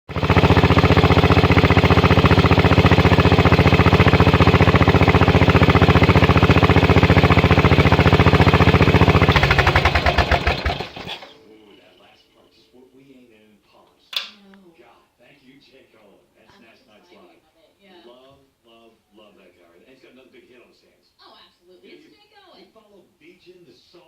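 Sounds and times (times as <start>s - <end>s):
turbocharged mower engine running: 0.1s - 11.4s.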